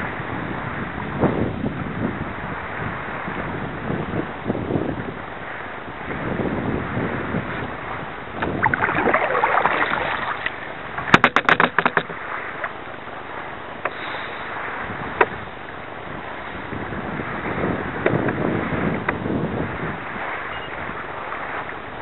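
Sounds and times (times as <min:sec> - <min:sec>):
wind on microphone: 0:00.0 - 0:22.0
water splashing around kayak: 0:02.4 - 0:22.0
sharp knocks: 0:11.1 - 0:12.2.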